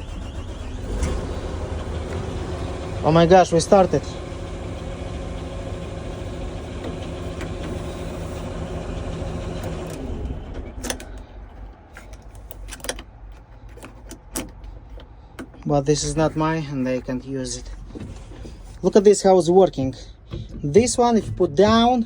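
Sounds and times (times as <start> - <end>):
excavator diesel engine running: 0.0 - 12.6.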